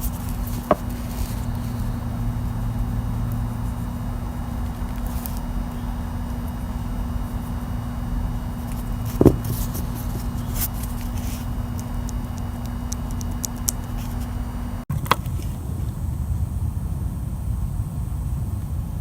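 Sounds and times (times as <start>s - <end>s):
car engine idling: 0.0s - 14.8s.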